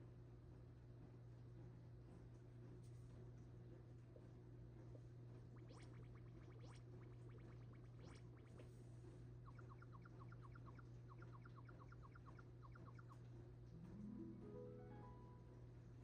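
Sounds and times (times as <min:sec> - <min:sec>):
steady low hum: 0:00.0 - 0:16.0
faint rapid bird-like chirping: 0:05.5 - 0:14.0.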